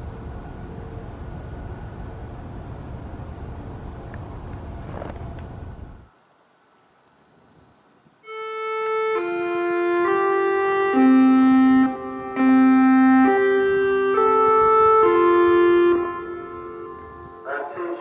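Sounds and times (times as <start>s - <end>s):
electronic chime melody: 9.2s - 18.0s.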